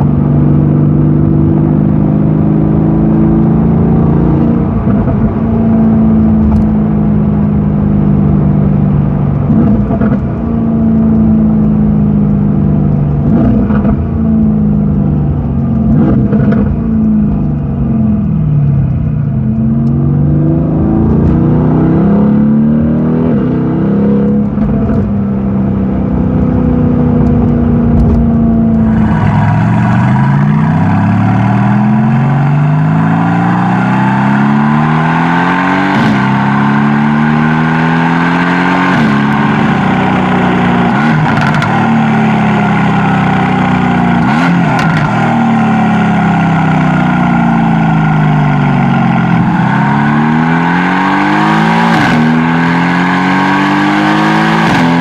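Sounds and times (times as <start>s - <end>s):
car engine accelerating through gears: 0.0s - 55.0s
exhaust crack: 27.2s - 32.2s, 38.9s - 49.6s.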